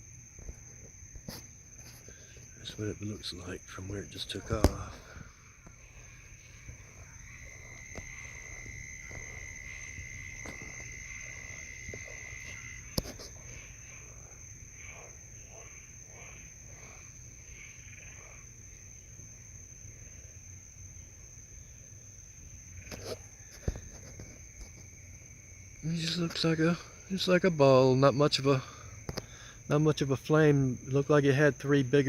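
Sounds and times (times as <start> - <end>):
night insects droning: 0.0 - 32.0.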